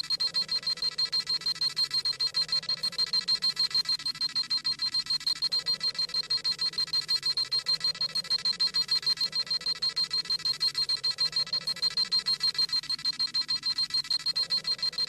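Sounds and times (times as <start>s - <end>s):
rapid electronic beeping: 0.0s - 15.0s.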